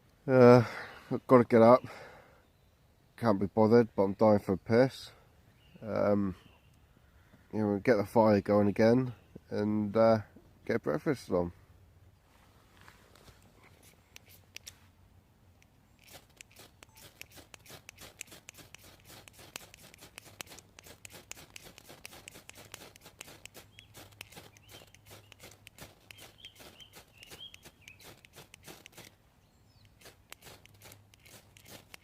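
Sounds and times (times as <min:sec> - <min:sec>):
small bird chirping: 0:15.6 - 0:32.0
dry twigs and leaves crunching: 0:16.0 - 0:29.2, 0:29.9 - 0:32.0.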